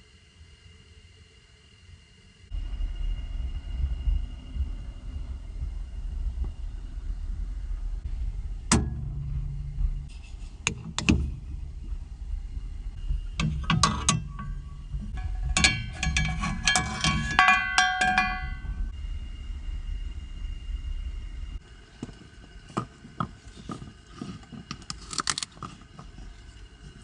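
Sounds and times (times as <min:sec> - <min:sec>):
steady low rumble: 0:02.4 - 0:27.0
hard objects knocking and clinking: 0:13.4 - 0:18.9.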